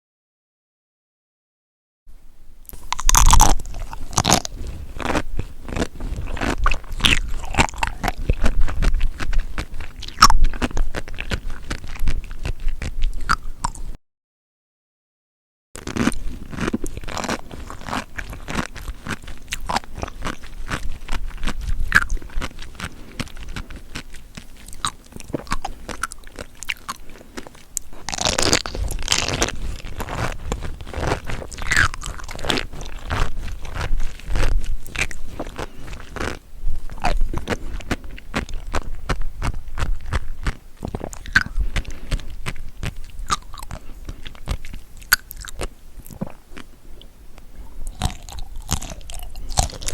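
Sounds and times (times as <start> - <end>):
chewing and crunching seafood: 2.7 - 14.0, 15.8 - 49.9.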